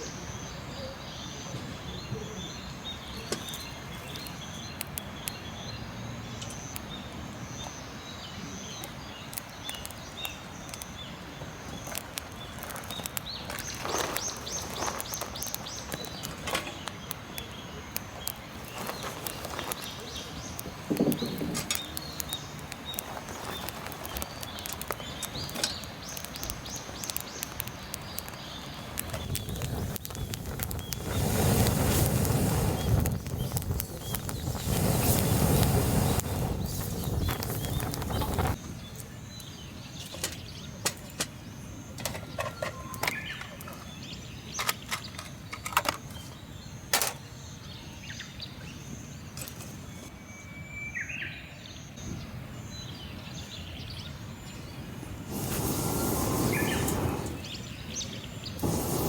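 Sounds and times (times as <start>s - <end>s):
rustling: 11.8s - 17.0s, 18.2s - 38.6s
sharp clicks: 11.8s - 39.1s
short bird chirps: 55.3s - 59.0s.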